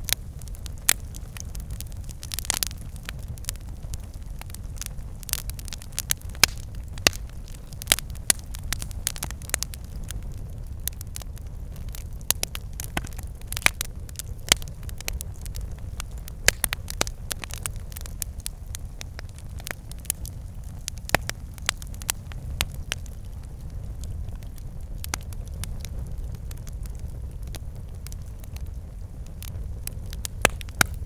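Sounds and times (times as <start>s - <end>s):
burning wood crackling and popping: 0.0s - 31.0s
low rumble of flames: 0.0s - 31.0s.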